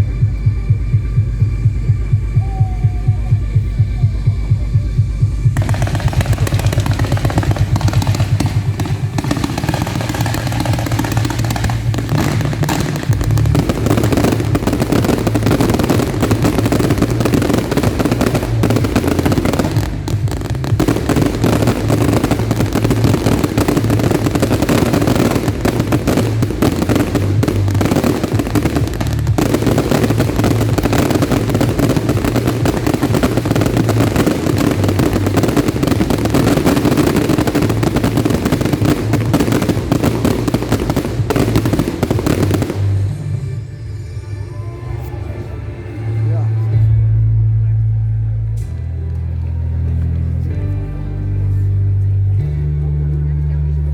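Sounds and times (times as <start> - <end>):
fireworks low booms: 0.0 - 44.0
fireworks bangs and crackles: 3.4 - 44.0.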